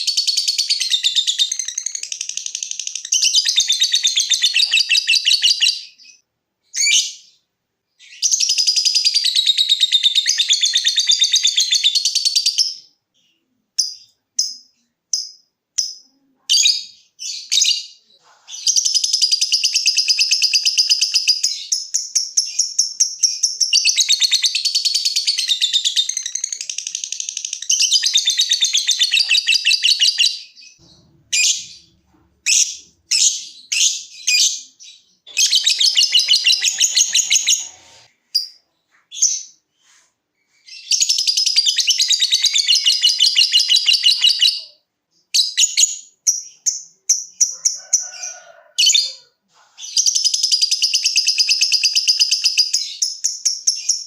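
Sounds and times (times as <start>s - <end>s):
lovebird short chirps: 31.4s - 44.6s
lovebird rapid chattering: 35.3s - 38.6s.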